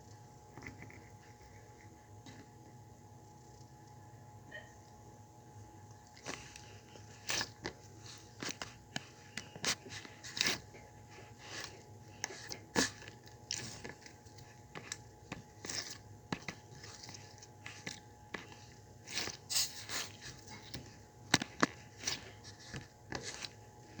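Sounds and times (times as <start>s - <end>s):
slime squishing with wet pops: 5.8s - 24.0s.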